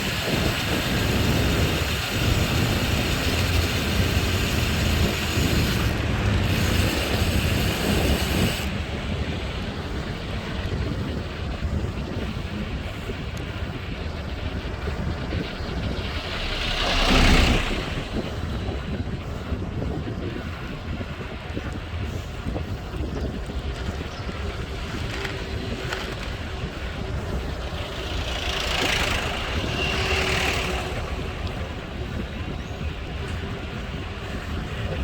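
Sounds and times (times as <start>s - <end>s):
wind rushing over microphone: 0.0s - 35.0s
motor vehicle passing: 13.5s - 19.6s, 22.9s - 35.0s.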